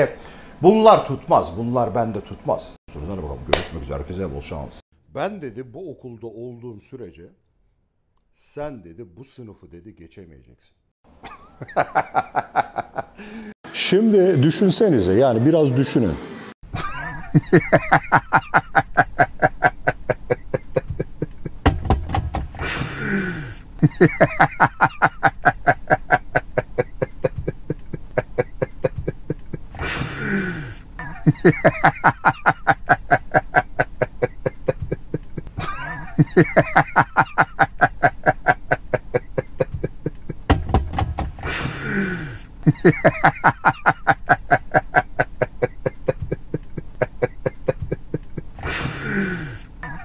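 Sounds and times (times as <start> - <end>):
person laughing hard: 11.2 - 13.4, 16.7 - 21.6, 22.5 - 50.0
gasping in-breaths: 13.2 - 13.6, 22.6 - 23.6, 29.8 - 30.9, 41.4 - 42.5, 48.6 - 49.7.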